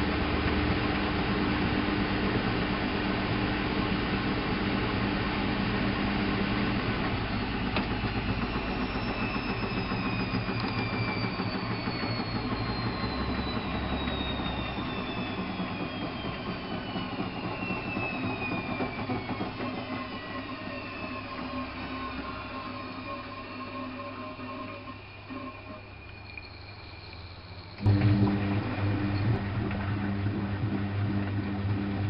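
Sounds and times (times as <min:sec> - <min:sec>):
washing machine motor whine: 0:00.0 - 0:32.0.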